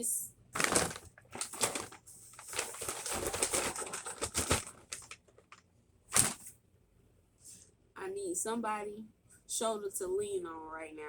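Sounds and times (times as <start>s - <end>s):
plastic snack bag crinkling: 0.6s - 6.5s.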